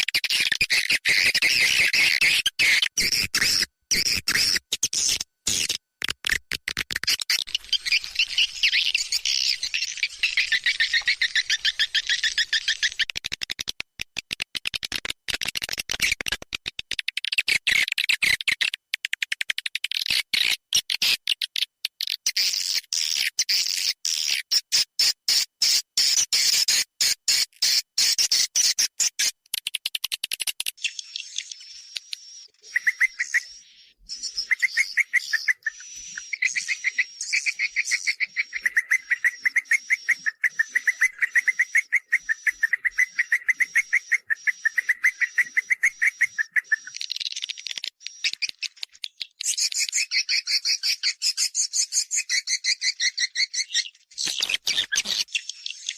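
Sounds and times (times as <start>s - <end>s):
swiftlet twittering calls: 7.0s - 13.0s, 30.8s - 55.9s.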